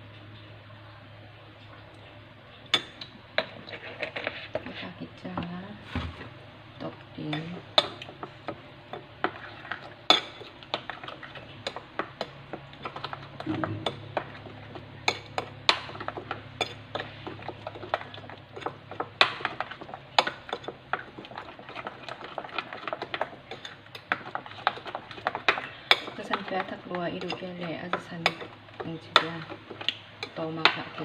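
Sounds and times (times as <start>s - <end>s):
utensil clinking against dish: 7.2s - 31.0s.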